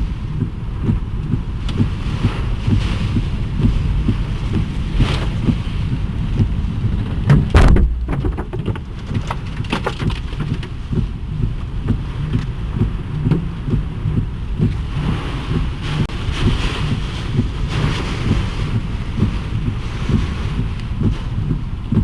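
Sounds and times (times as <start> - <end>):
wind pounding on microphone: 0.0 - 22.0
debris striking: 7.3 - 10.6.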